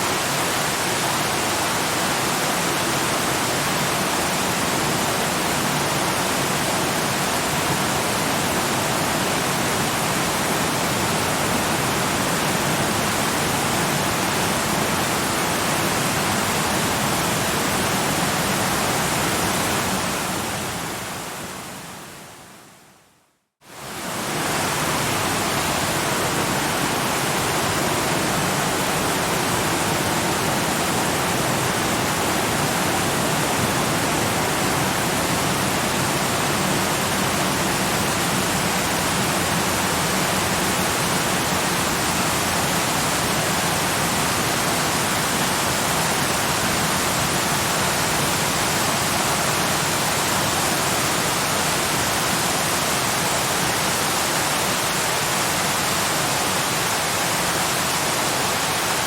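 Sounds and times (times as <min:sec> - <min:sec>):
waterfall rushing: 0:23.7 - 0:59.0.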